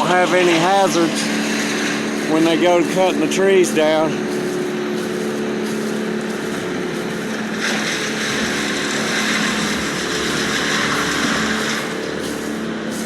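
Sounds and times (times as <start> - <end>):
machinery engine running: 0.0 - 13.0
loud hissing rush: 0.1 - 13.0.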